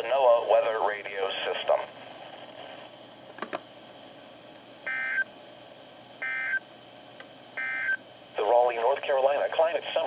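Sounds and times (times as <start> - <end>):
radio hiss: 0.0 - 3.0, 8.4 - 10.0.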